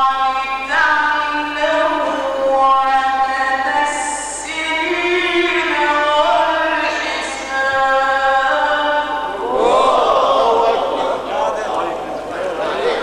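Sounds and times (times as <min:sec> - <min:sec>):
man chanting melodic recitation: 0:10.4 - 0:13.0.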